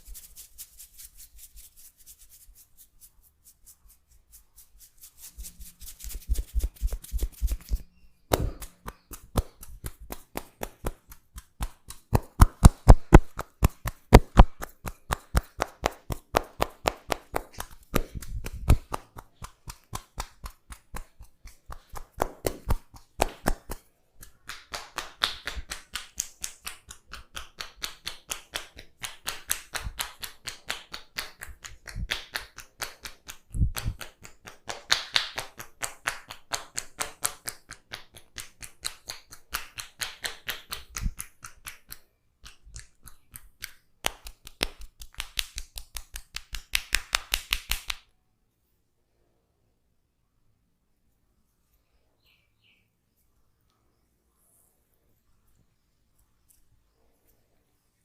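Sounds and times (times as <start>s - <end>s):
hands tapping and slapping head: 5.4s - 48.1s.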